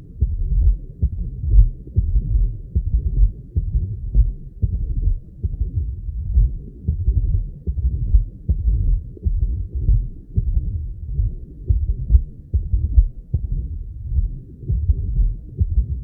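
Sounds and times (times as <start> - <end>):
heart murmur: 0.0 - 16.0
low-pitched heartbeats: 0.0 - 16.0.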